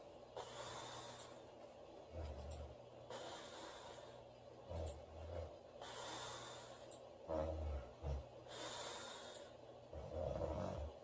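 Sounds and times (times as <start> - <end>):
airy breathing: 0.4 - 11.0
woman snoring: 7.3 - 9.1, 9.9 - 11.0.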